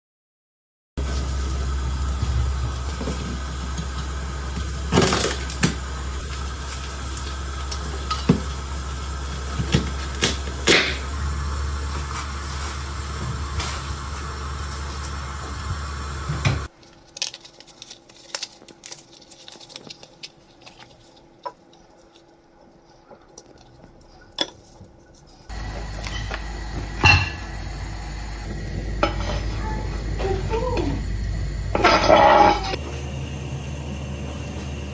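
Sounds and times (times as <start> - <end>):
steady low hum: 1.0 - 34.9
pots and utensils clinking: 6.8 - 8.6, 25.7 - 27.5, 29.0 - 30.9, 31.7 - 32.8.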